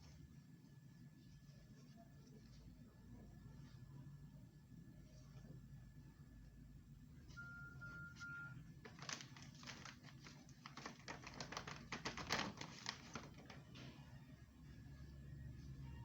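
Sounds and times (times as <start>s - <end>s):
short even beeps: 7.4s - 8.6s
rapid clicking and crinkling: 8.7s - 14.0s.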